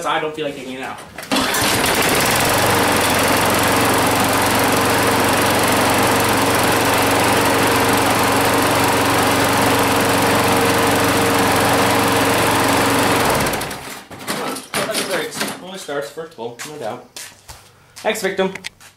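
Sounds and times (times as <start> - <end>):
lawn mower engine running: 1.2 - 14.0.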